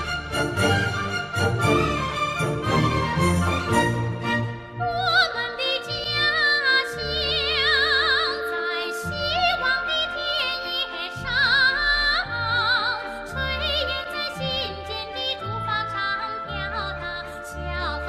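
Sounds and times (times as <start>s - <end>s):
sustained instrumental accompaniment: 0.0s - 18.0s
woman singing operatically: 4.8s - 18.0s.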